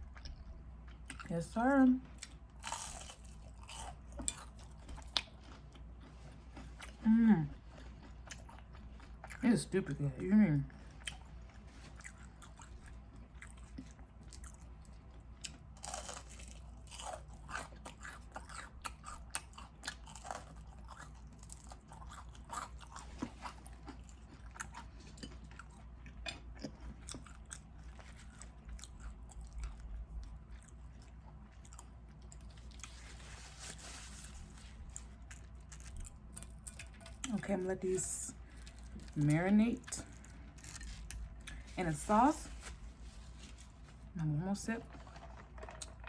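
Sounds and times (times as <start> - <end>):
person crunching crispy food: 2.2 - 9.4, 11.0 - 29.9, 30.5 - 37.3, 38.4 - 39.2, 40.0 - 41.8.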